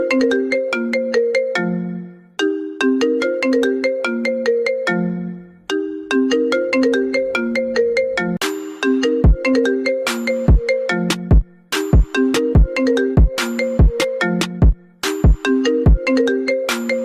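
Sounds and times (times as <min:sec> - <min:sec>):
mobile phone ringtone: 0:00.0 - 0:11.2, 0:12.2 - 0:14.5.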